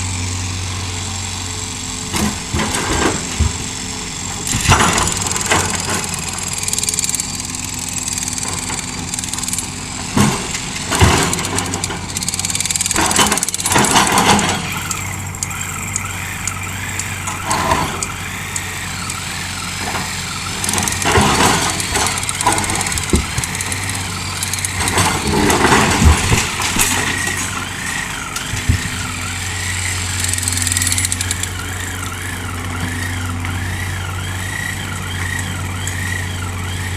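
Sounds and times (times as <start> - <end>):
excavator diesel engine humming: 0.0 - 36.9
machine clanks and knocks: 10.1 - 15.5, 20.6 - 29.1.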